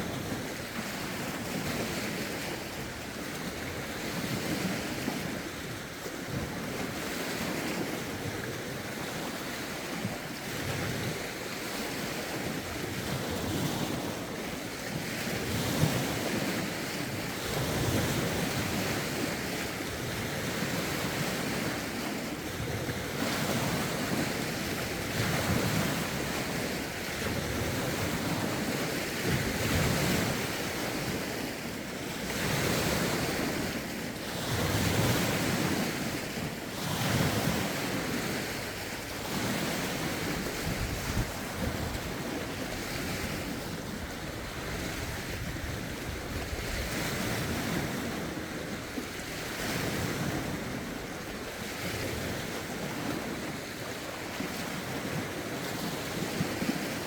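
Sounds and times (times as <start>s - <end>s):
waves lapping: 0.0s - 57.0s
wind buffeting microphone: 32.2s - 57.0s.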